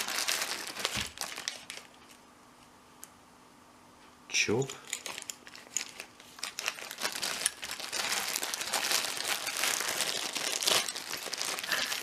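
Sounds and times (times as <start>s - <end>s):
packaging crinkling: 0.0s - 2.2s, 4.8s - 12.0s.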